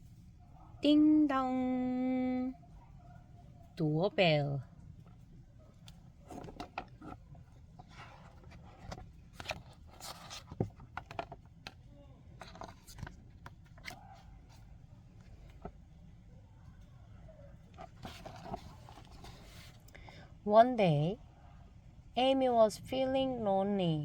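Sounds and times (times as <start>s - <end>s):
book pages turning: 6.3s - 11.8s, 12.4s - 14.6s, 17.8s - 19.9s.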